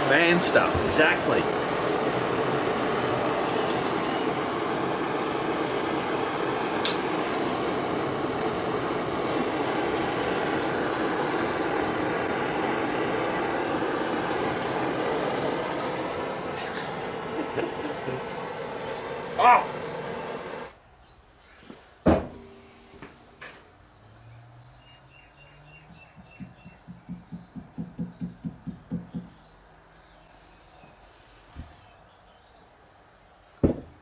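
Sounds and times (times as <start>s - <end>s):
blowtorch flame hissing: 0.0s - 20.8s.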